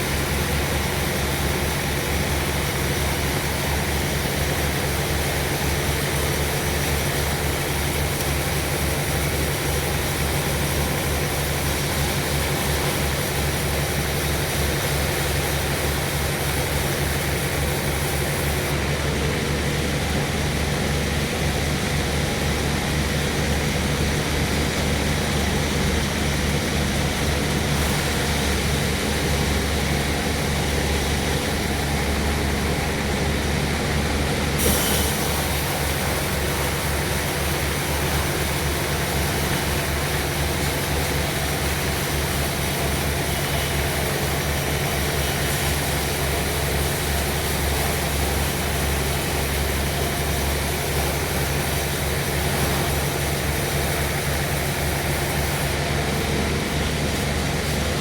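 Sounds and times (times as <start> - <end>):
low engine hum: 0.0 - 58.0
mechanical machinery noise: 0.0 - 58.0.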